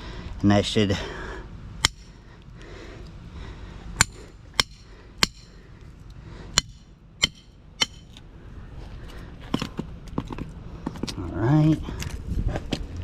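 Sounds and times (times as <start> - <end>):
hammer striking copper winding: 6.6 - 8.2.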